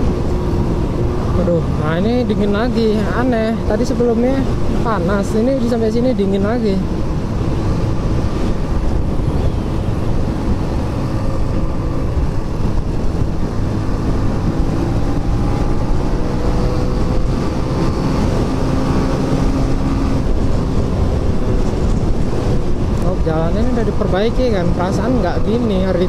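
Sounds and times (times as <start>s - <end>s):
motorcycle engine hum: 0.0s - 26.0s
wind rumbling on microphone: 0.0s - 26.0s.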